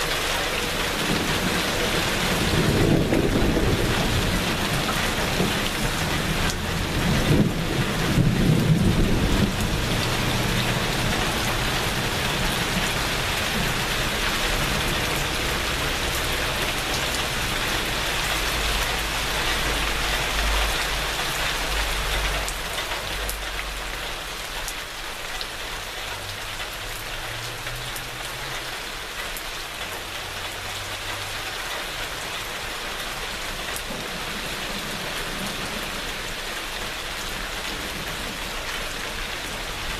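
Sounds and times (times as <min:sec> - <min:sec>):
steady rain falling: 0:00.0 - 0:39.9
thunder clap and rumble: 0:00.9 - 0:20.8.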